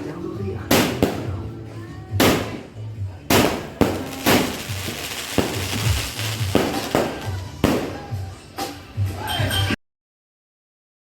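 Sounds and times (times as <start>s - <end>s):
background music: 0.0s - 9.8s
fireworks hissing crackle: 3.3s - 8.1s
fireworks bangs: 3.3s - 8.2s.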